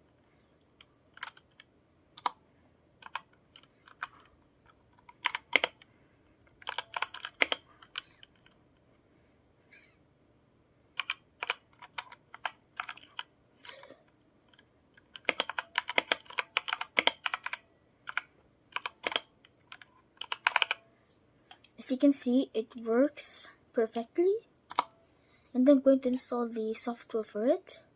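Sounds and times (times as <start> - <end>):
mechanical keyboard key clicks: 14.5 - 20.8.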